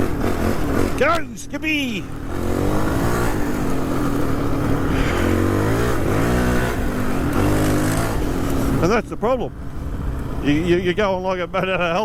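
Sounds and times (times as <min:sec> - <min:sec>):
dirt bike engine revving: 0:00.0 - 0:09.0.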